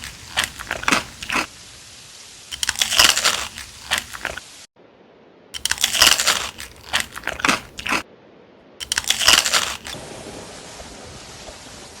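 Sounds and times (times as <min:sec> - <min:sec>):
crunchy food being chewed: 0:00.0 - 0:01.5, 0:02.5 - 0:04.6, 0:05.6 - 0:08.0, 0:08.8 - 0:10.0
steady hiss: 0:00.0 - 0:04.7, 0:09.0 - 0:12.0.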